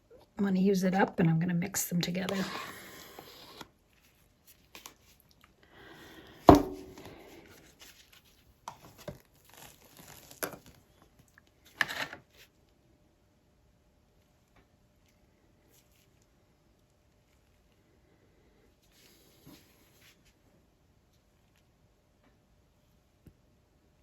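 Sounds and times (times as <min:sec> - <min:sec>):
sharp knock: 0:06.5 - 0:07.0.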